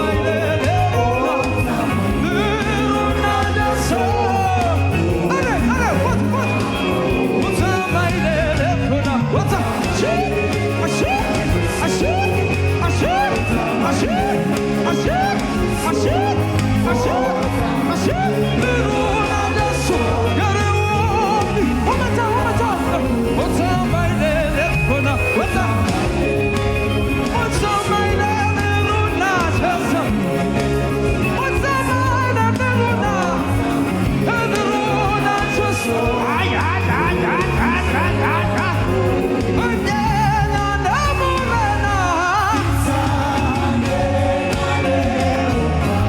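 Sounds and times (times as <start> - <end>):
live band with bass line: 0.0 - 46.0
person singing: 0.0 - 46.0.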